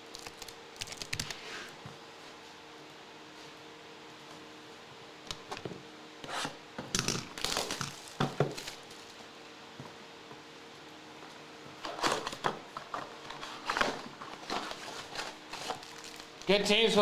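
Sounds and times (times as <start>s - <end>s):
wrappers crinkling and tearing: 0.0s - 1.7s, 7.0s - 9.3s, 11.9s - 16.5s.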